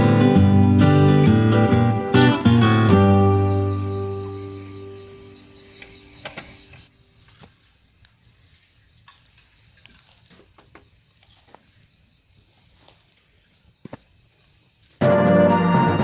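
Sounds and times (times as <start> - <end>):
guitar music: 0.0 - 5.5, 15.0 - 16.0
wood fire crackling: 5.8 - 15.0.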